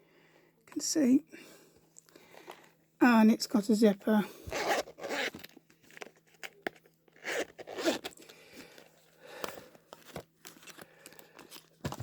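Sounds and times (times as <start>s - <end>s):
zipper strokes: 4.5s - 5.3s, 7.2s - 8.1s
book cover rustling and scraping: 4.5s - 12.0s.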